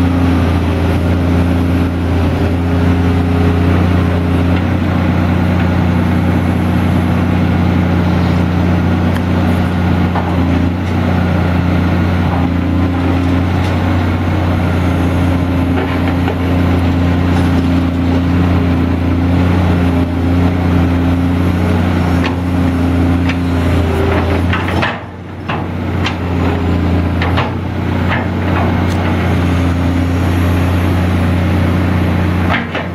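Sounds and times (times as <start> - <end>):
excavator diesel engine running: 0.0 - 32.9
clanks and knocks: 24.1 - 26.2, 27.1 - 29.1, 32.5 - 32.9.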